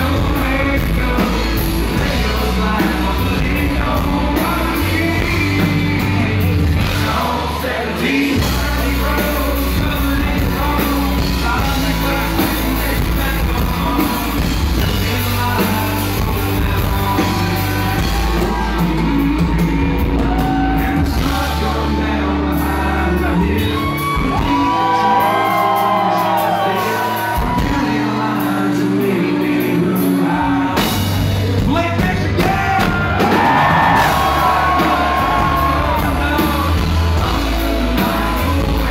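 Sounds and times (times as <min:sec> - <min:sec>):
live country-rock song: 0:00.0 - 0:38.9
crowd shouting and whooping: 0:01.2 - 0:29.3, 0:32.2 - 0:38.9.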